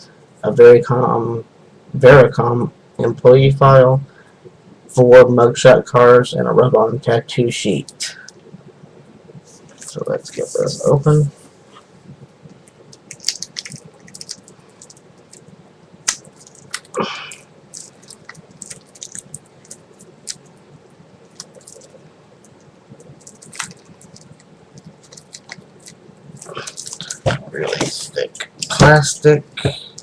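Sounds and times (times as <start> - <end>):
plastic shrink-wrap crinkling: 12.7 - 17.0, 17.7 - 20.5, 21.2 - 22.0, 22.9 - 27.3.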